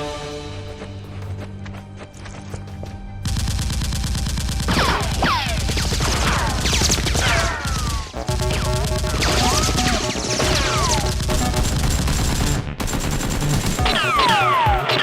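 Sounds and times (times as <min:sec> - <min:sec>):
background music: 0:00.0 - 0:15.0
rapid automatic gunfire: 0:03.3 - 0:15.0.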